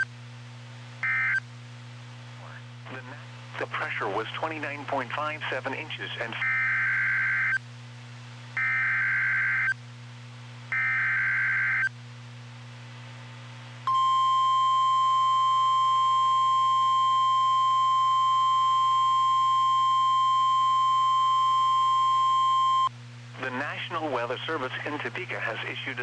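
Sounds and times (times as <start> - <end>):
steady warning alarm tone: 13.9 - 22.9.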